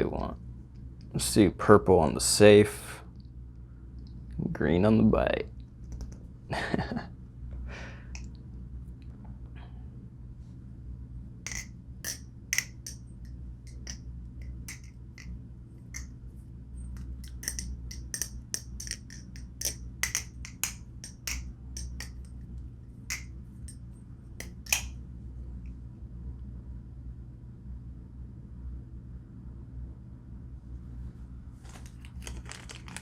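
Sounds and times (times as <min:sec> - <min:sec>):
butterfly knife clicking: 0:11.5 - 0:13.0, 0:13.7 - 0:14.9, 0:17.2 - 0:22.3, 0:24.4 - 0:24.9.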